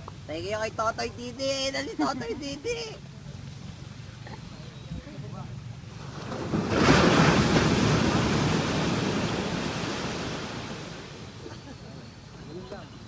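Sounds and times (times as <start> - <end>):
ocean wave breaking: 5.8 - 11.7.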